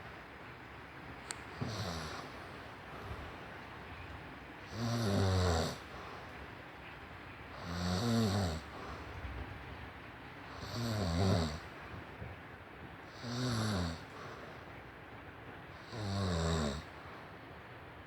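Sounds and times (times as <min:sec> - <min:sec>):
person snoring: 0:01.6 - 0:02.3, 0:04.7 - 0:05.8, 0:10.6 - 0:11.6, 0:13.2 - 0:14.0, 0:15.8 - 0:16.9.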